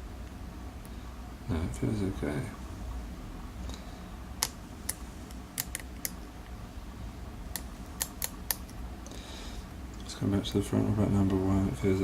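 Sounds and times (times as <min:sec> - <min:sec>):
lock pick clicking pins: 0:05.6 - 0:06.2, 0:07.6 - 0:08.8.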